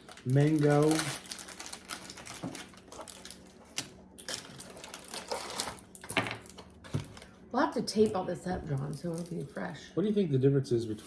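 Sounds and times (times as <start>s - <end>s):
candy wrappers crinkling: 0.0s - 7.4s, 8.8s - 9.6s.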